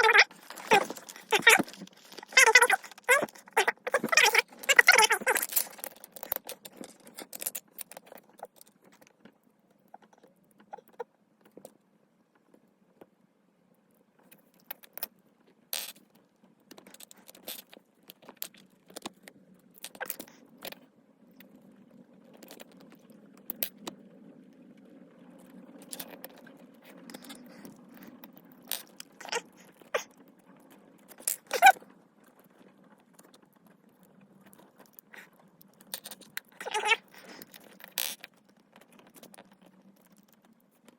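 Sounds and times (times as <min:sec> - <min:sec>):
plastic packaging rustling: 0:00.0 - 0:08.6
plastic pieces clicking: 0:00.0 - 0:09.1, 0:31.1 - 0:31.8.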